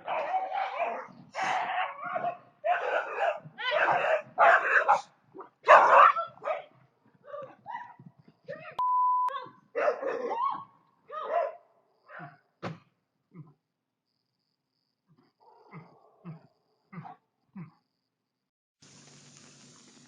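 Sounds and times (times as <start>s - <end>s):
dog barking: 0.0s - 8.1s, 9.4s - 12.4s
steady beep: 8.8s - 9.3s.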